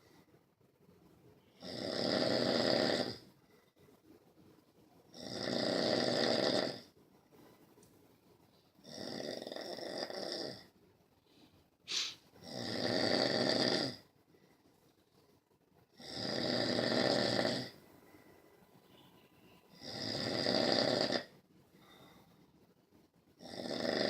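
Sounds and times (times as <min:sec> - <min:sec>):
snoring: 0:01.5 - 0:03.3, 0:05.1 - 0:06.9, 0:08.8 - 0:10.7, 0:11.9 - 0:14.0, 0:16.0 - 0:17.8, 0:19.7 - 0:22.0, 0:23.4 - 0:24.0
sharp snort: 0:11.9 - 0:12.2.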